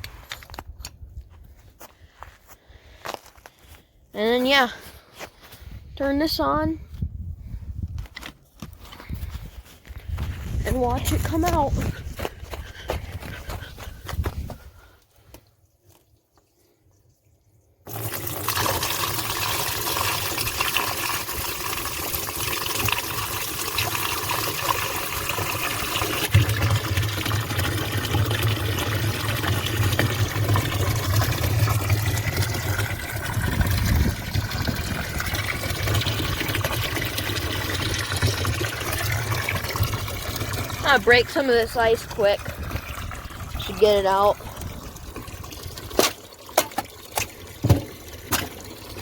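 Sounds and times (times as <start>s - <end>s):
water rushing from pipe into tank: 15.9s - 49.0s.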